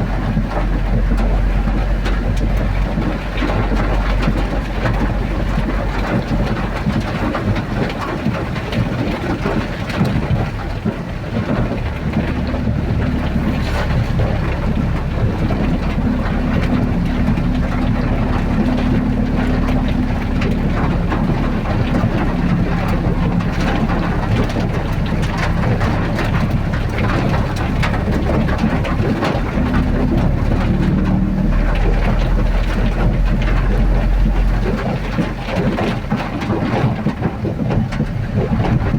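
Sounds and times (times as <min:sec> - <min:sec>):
rain: 0:00.0 - 0:38.9
road noise: 0:00.0 - 0:38.9
vehicle engine: 0:00.0 - 0:38.9.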